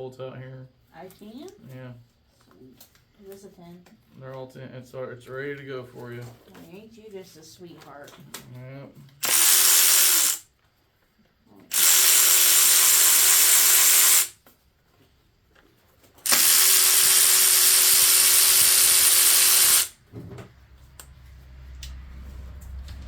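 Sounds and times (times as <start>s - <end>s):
power tool running: 9.2s - 10.4s, 11.7s - 14.4s, 16.2s - 20.0s.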